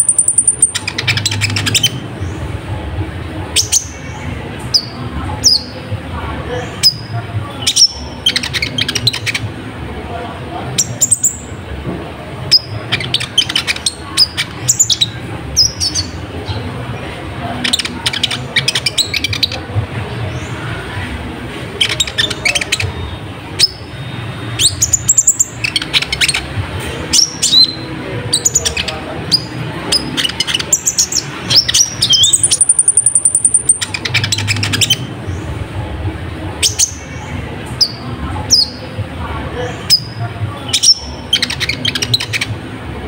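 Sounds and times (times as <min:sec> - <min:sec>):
bird singing high chirps: 0:00.0 - 0:02.5, 0:03.5 - 0:05.8, 0:06.5 - 0:09.5, 0:10.8 - 0:11.5, 0:12.5 - 0:16.6, 0:21.8 - 0:26.5, 0:27.1 - 0:35.5, 0:39.7 - 0:42.5.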